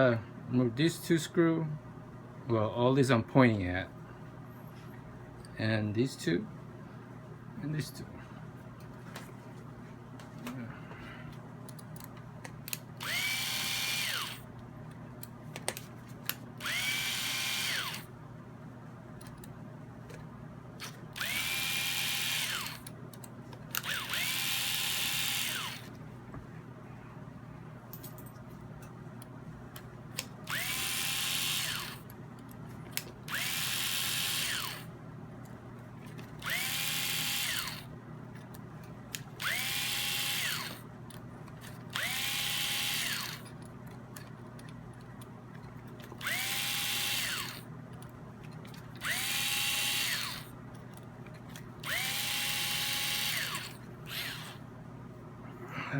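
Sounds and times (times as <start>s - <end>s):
electric screwdriver spinning: 13.0s - 14.4s, 16.6s - 18.1s, 20.8s - 22.9s, 23.7s - 25.9s, 30.5s - 32.0s, 33.3s - 34.9s, 36.4s - 37.9s, 39.4s - 40.8s, 41.9s - 43.5s, 46.1s - 47.6s, 49.0s - 50.5s, 51.5s - 54.6s.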